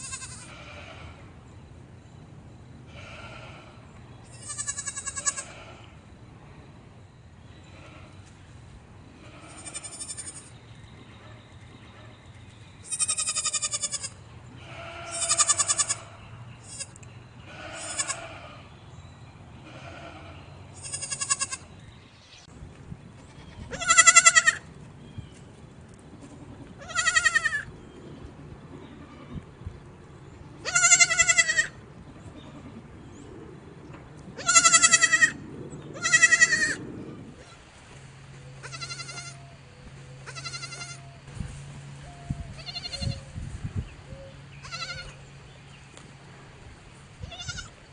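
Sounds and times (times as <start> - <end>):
goats bleating: 0.0 - 1.2, 4.3 - 5.8, 9.2 - 10.5, 12.9 - 18.7, 19.6 - 21.6, 23.3 - 24.6, 26.8 - 27.6, 30.6 - 31.8, 34.4 - 35.4, 36.0 - 36.8, 38.6 - 39.4, 40.2 - 41.0, 44.6 - 45.2, 47.2 - 47.7.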